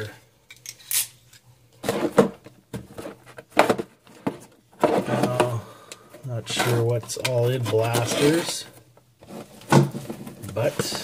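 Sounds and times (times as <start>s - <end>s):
cardboard box handling noises: 1.8s - 5.6s, 6.2s - 11.0s
man talking: 5.1s - 8.8s, 10.4s - 11.0s.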